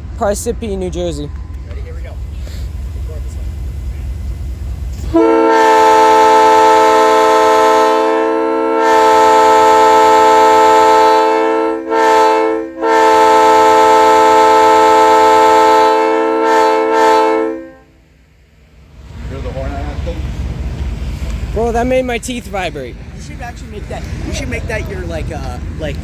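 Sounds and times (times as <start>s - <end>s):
locomotive air horn chord: 5.0s - 18.0s.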